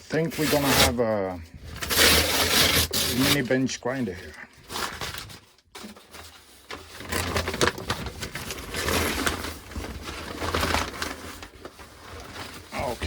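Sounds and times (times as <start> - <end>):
packaging rustling and clicking: 4.6 - 12.7.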